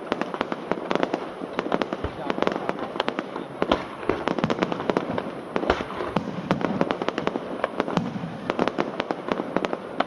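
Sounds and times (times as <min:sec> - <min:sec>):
fireworks bangs and crackles: 0:00.0 - 0:10.0.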